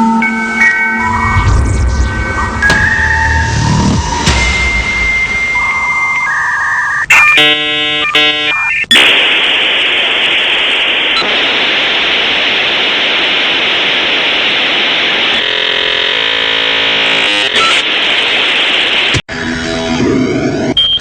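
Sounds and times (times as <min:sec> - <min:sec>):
buzzing tone: 0:01.0 - 0:09.2, 0:15.3 - 0:17.8
dial-up modem hiss: 0:07.2 - 0:19.2.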